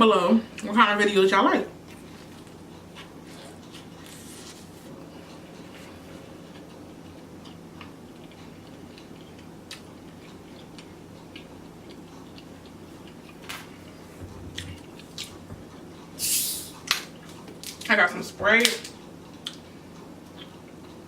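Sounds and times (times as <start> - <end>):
person chewing: 1.9 - 17.8, 19.2 - 21.0
short loud hiss: 16.2 - 16.7.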